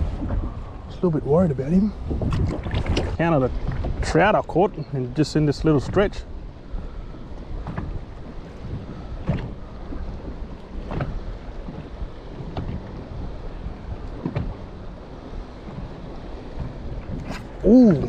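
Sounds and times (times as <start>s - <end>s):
wind buffeting microphone: 0.0s - 18.0s
short sharp knocks or splashes: 2.0s - 4.1s, 10.8s - 11.8s.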